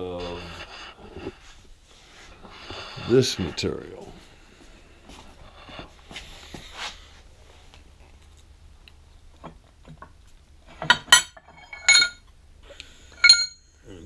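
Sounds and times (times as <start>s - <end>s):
metal bars rustling: 10.7s - 12.3s, 13.2s - 13.7s
metal pieces clinking: 10.9s - 12.2s, 13.2s - 13.6s.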